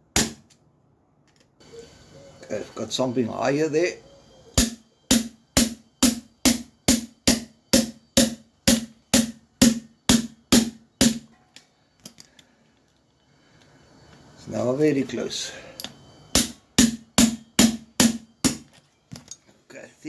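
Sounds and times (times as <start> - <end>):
hammer knocking on metal pin: 4.6 - 11.4, 16.4 - 19.3.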